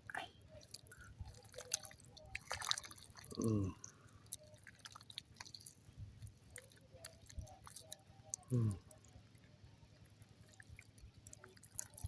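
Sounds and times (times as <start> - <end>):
hands splashing in mud and water: 0.6 - 8.0.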